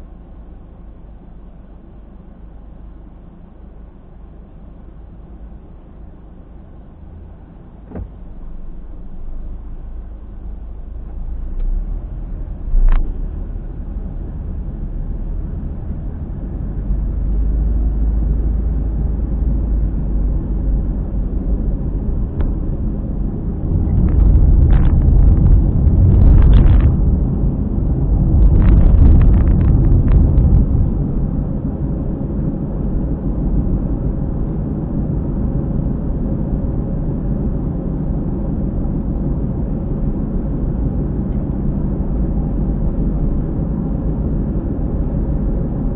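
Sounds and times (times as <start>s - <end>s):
car road rumble from inside cabin: 0.0s - 45.9s
periodic tyre noise: 21.3s - 33.2s.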